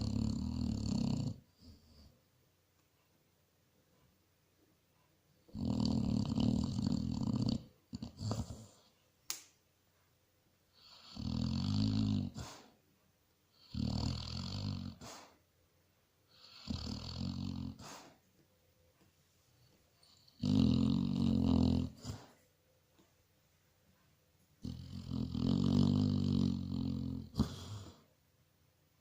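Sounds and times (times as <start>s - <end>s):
dog snoring: 0.0s - 2.1s, 5.5s - 8.9s, 10.7s - 12.8s, 13.5s - 15.4s, 16.3s - 18.2s, 19.6s - 22.4s, 24.6s - 28.1s
dog snorting: 0.0s - 2.1s, 5.5s - 9.0s, 10.8s - 12.8s, 13.6s - 15.4s, 16.3s - 18.2s, 19.6s - 22.4s, 24.6s - 28.0s.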